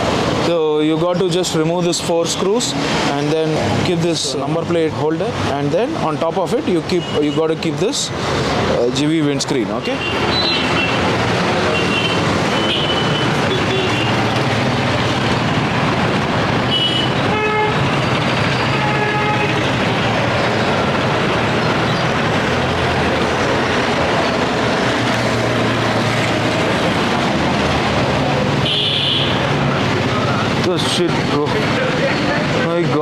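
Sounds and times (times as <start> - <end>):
road traffic: 0.0 - 33.0
vehicle horn tooting: 11.7 - 14.2, 16.7 - 17.9, 18.6 - 19.7, 28.6 - 29.4.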